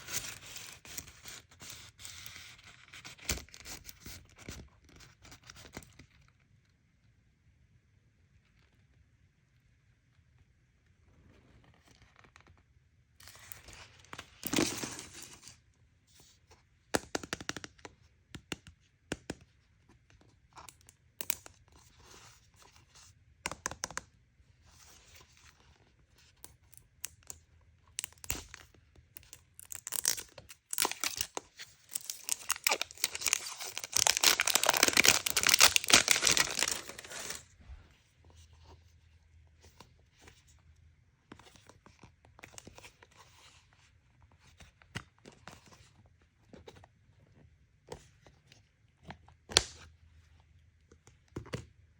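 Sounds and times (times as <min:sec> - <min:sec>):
packaging tearing: 0:29.2 - 0:37.5
packaging crinkling: 0:29.2 - 0:37.6.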